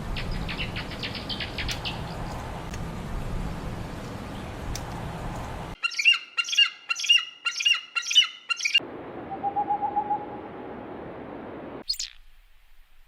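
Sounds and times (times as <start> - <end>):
outdoor background noise: 0.0 - 13.0
bird squawking: 5.8 - 8.8.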